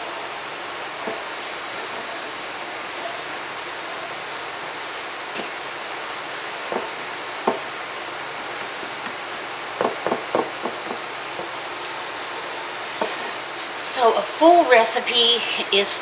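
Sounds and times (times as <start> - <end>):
steady hiss: 0.0 - 16.0
kitchen handling clicks and knocks: 9.8 - 11.5.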